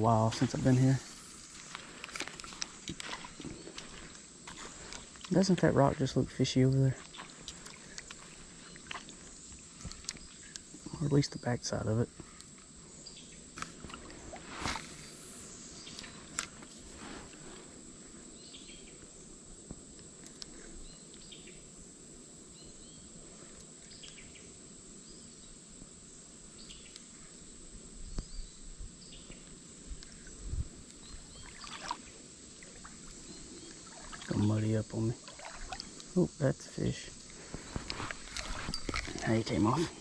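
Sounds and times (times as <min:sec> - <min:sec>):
high-pitched insect drone: 0:00.0 - 0:12.1, 0:13.0 - 0:16.6, 0:30.0 - 0:40.0
low hiss: 0:00.0 - 0:40.0.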